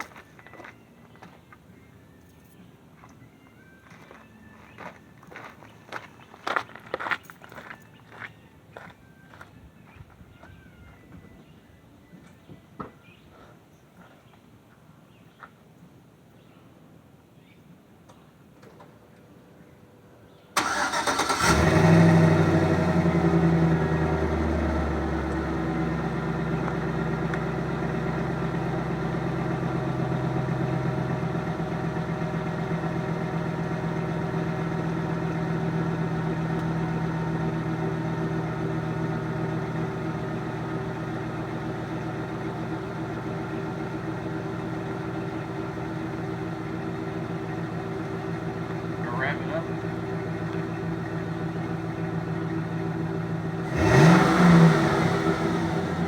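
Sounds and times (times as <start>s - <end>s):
truck engine starting and idling: 20.6s - 56.0s.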